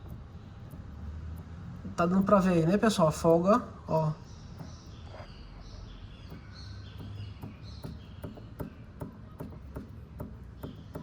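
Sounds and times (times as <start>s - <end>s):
tie rod knocking: 0.0s - 1.0s, 6.2s - 11.0s
birds chirping: 0.0s - 11.0s.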